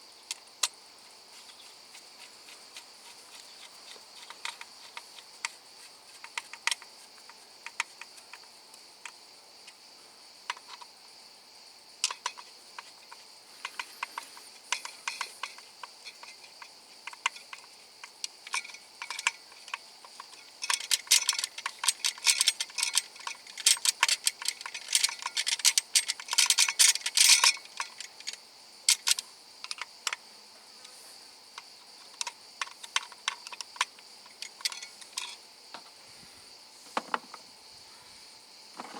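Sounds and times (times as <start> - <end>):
hand tool clicks and metallic taps: 2.2 - 5.6, 6.2 - 6.9, 7.6 - 9.2, 12.0 - 12.9, 13.6 - 30.2, 31.6 - 35.8.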